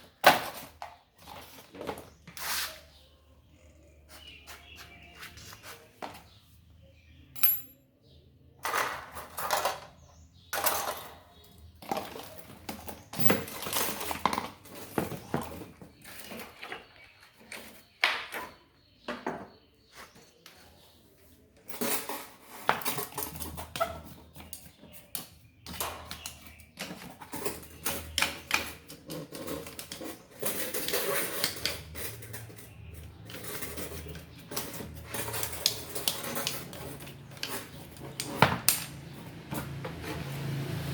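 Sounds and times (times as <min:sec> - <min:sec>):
scraping and rubbing: 0:00.4 - 0:03.1, 0:04.0 - 0:06.4, 0:19.9 - 0:25.1, 0:26.1 - 0:40.6
metal parts and tools clinking: 0:07.2 - 0:07.8, 0:08.6 - 0:18.4, 0:25.7 - 0:40.3.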